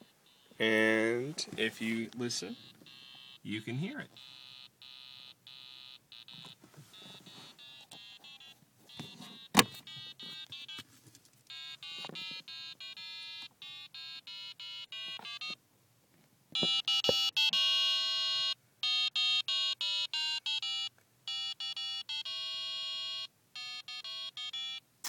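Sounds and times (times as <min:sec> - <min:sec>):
electronic beep tune: 0:02.5 - 0:03.4, 0:04.2 - 0:10.8.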